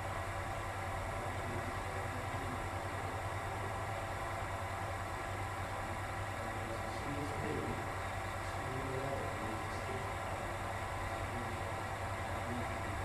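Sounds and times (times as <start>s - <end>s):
steady mechanical hum: 0.0s - 13.0s.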